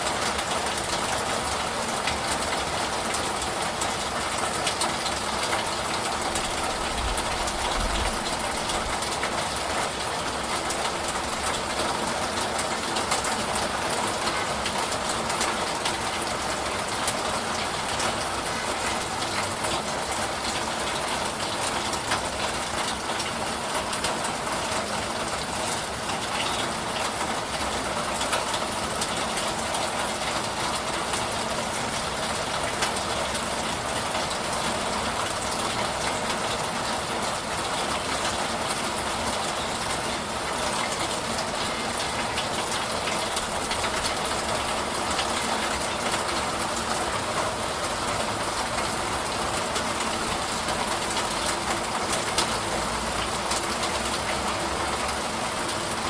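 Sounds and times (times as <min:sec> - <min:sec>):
steady rainfall: 0:00.0 - 0:56.0.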